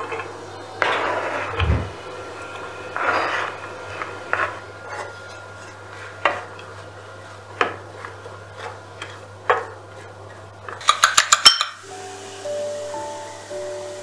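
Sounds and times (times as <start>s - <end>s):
dishes and cutlery clinking: 10.7s - 11.8s.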